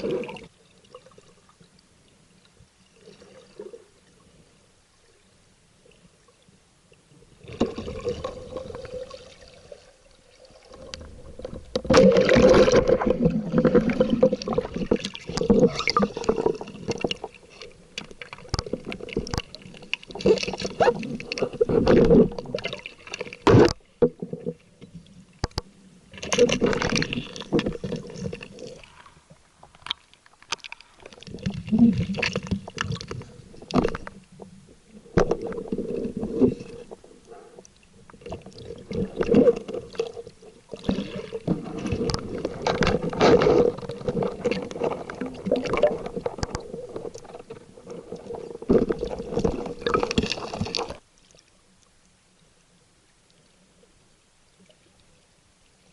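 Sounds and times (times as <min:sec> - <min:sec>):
water sloshing and gurgling: 0:00.0 - 0:52.2
faint steady hum: 0:00.0 - 0:55.9.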